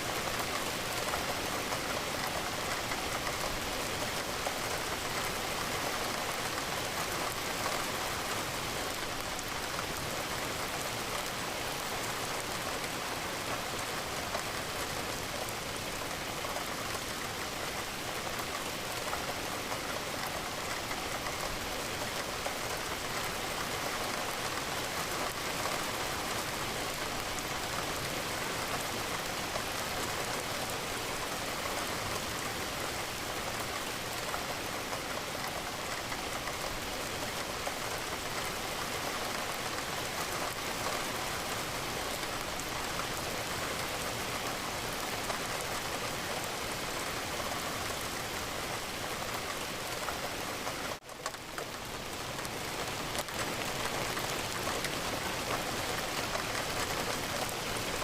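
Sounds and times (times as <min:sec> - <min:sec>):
rain on a window: 0:00.0 - 0:58.0.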